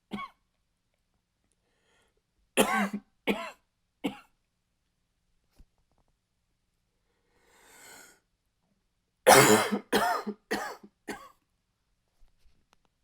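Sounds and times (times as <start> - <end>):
man coughing: 2.6 - 3.5, 9.3 - 11.2
short breath in: 7.2 - 8.2.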